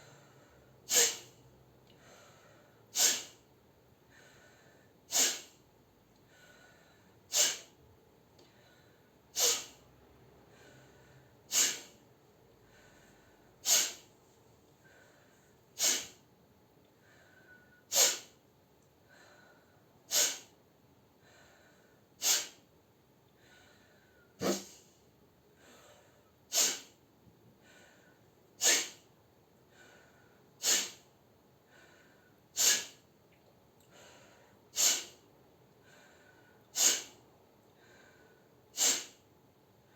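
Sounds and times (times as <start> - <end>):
forceful nasal exhales: 0.9 - 1.4, 2.9 - 3.4, 5.1 - 5.6, 7.3 - 7.8, 9.4 - 9.8, 11.5 - 12.0, 13.6 - 14.1, 15.8 - 16.2, 17.9 - 18.4, 20.1 - 20.5, 22.2 - 22.6, 24.4 - 24.9, 26.5 - 27.0, 28.6 - 29.0, 30.6 - 31.1, 32.6 - 33.0, 34.8 - 35.2, 36.8 - 37.2, 38.8 - 39.2
faint mouth inhale: 11.5 - 12.0, 12.8 - 14.1, 30.6 - 31.0, 32.6 - 33.0, 34.1 - 35.2, 35.9 - 37.2, 37.8 - 39.2.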